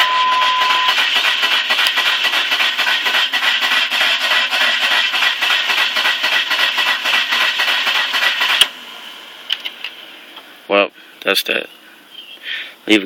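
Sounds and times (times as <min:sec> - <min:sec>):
car engine cranking: 0:00.0 - 0:10.0.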